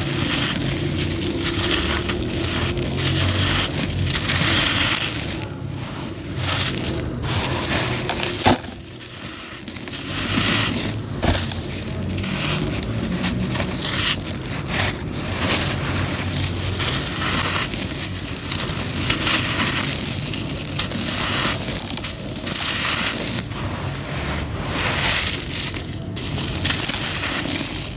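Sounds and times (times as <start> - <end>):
cement crunching and crumbling: 0.0 - 27.9.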